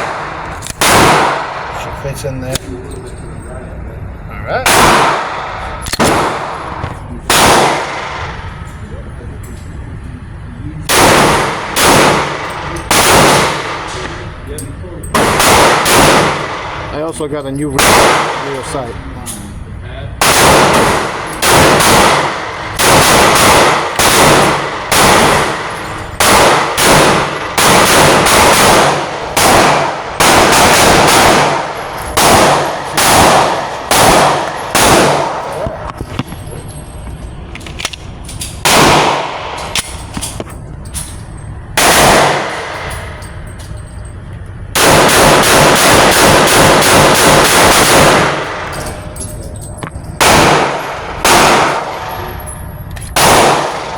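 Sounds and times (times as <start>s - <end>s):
pistol shots: 0.0s - 2.8s, 4.6s - 8.7s, 10.8s - 14.4s, 15.1s - 17.2s, 17.8s - 19.4s, 20.2s - 36.5s, 37.7s - 43.3s, 44.7s - 53.9s.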